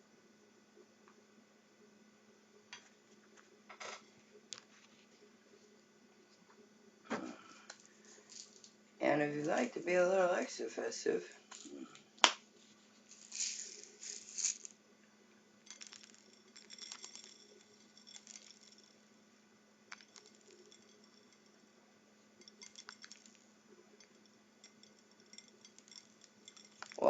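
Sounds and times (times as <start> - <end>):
sprinkles rattling in shaker: 8.0 - 8.7, 12.6 - 14.8, 15.6 - 19.1, 19.9 - 21.6, 22.4 - 27.0
sprinkles pattering: 13.0 - 14.8, 15.6 - 19.0, 19.9 - 21.5, 22.4 - 27.0
shaker container click: 13.1 - 14.8, 15.7 - 18.9, 19.9 - 21.4.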